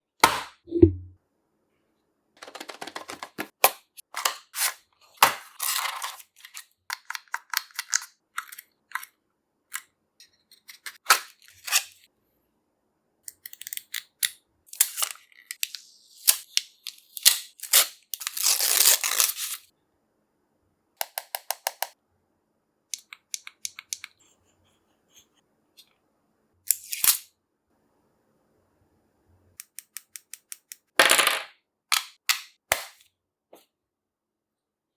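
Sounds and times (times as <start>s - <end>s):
packaging tearing: 4.2s - 6.7s, 17.0s - 19.7s.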